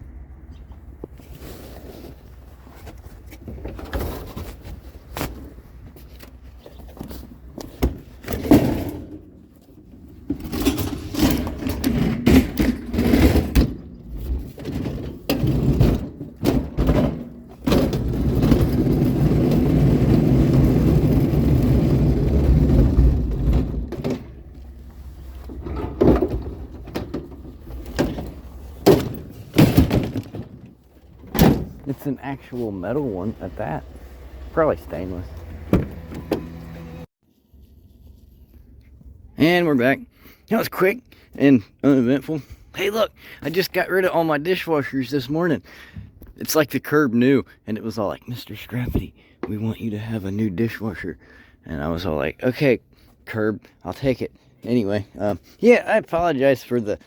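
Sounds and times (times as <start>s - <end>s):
knocks and thunks of metal appliance: 7.8s - 9.3s, 10.3s - 24.4s, 25.6s - 31.8s, 35.7s - 36.6s
steady scraping rumble: 8.9s - 39.9s.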